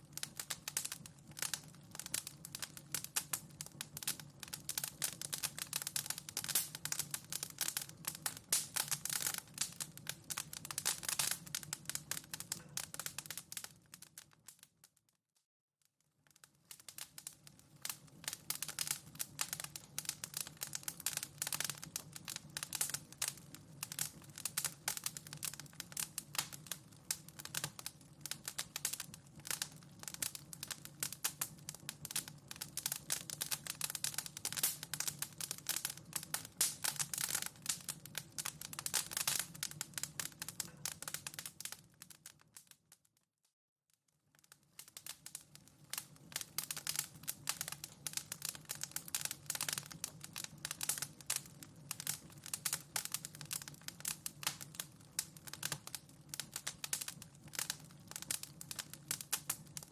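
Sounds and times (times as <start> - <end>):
wood fire crackling: 0.0 - 15.0, 16.1 - 43.1, 44.4 - 59.9.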